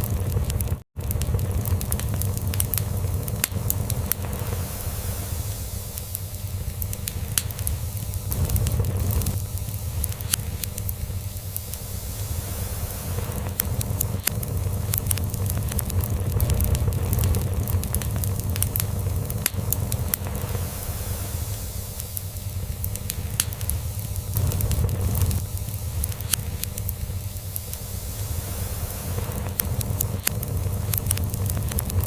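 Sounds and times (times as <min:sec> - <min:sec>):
log fire crackling and popping: 0:00.0 - 0:32.0.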